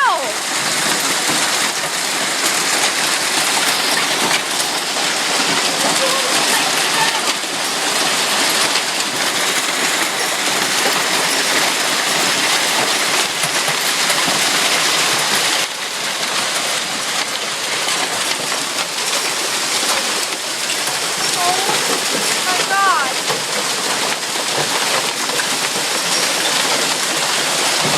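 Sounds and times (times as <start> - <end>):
hail and heavy rain clattering: 0.0 - 27.9.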